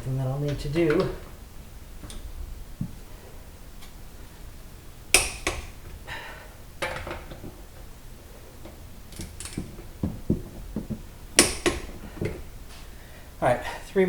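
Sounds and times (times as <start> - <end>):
torque wrench clicking: 5.1 - 5.8, 11.4 - 12.4.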